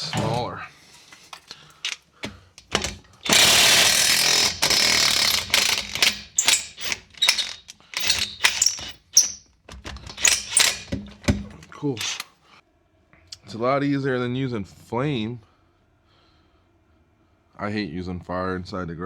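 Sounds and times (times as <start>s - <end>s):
sharp clicks and knocks: 1.0s - 12.3s
power tool running: 2.6s - 12.3s.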